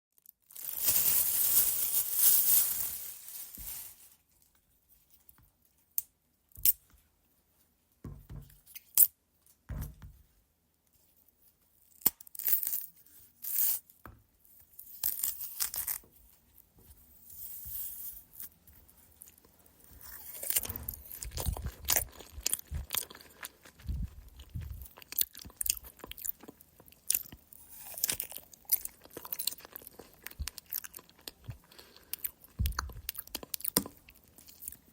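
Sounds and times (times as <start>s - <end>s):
short rustles: 0.8s - 4.2s
biting and chewing: 19.2s - 34.9s.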